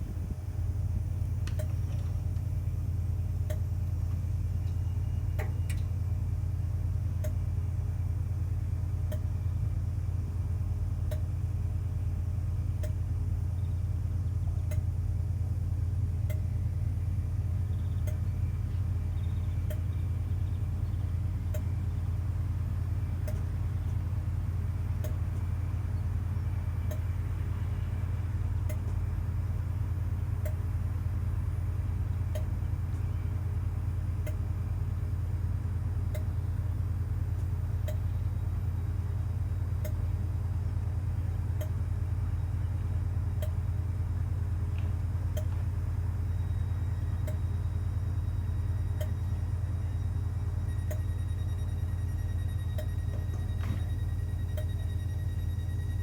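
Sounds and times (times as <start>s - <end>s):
diesel train engine idling: 0.0s - 56.0s
faint ticking: 7.2s - 7.4s, 9.1s - 9.3s, 11.0s - 11.3s, 12.8s - 13.0s, 14.6s - 14.9s, 17.9s - 18.3s, 25.0s - 25.5s, 42.6s - 43.7s.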